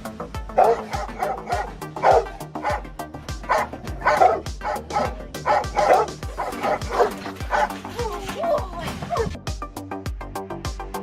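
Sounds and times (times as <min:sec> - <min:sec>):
music with low beat: 0:00.0 - 0:11.0
dog barking: 0:00.6 - 0:08.1.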